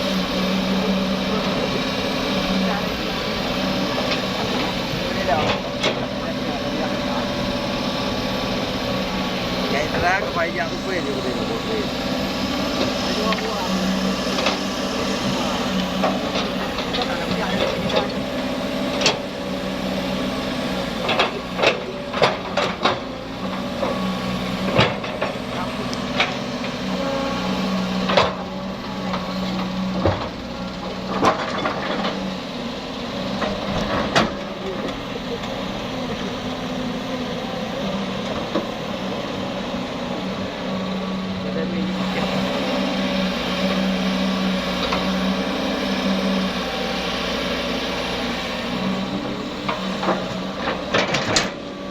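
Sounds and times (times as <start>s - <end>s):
diesel engine running: 0.0s - 51.9s
sharp knocks and clunks: 49.6s - 51.6s.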